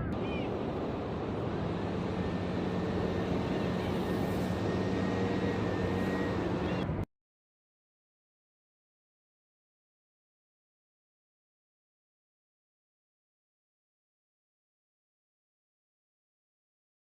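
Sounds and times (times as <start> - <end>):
motor drone: 0.0 - 7.0.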